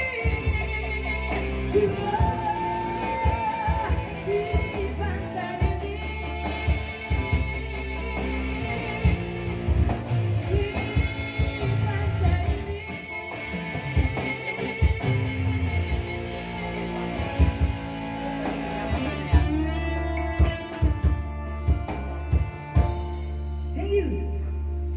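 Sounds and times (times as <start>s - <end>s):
rock-pop song over loudspeakers: 0.0s - 24.9s.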